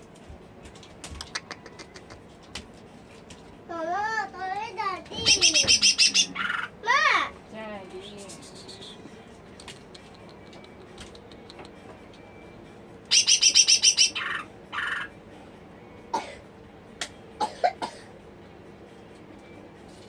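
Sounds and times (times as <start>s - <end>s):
bird chirping: 5.2s - 6.8s, 13.1s - 15.2s.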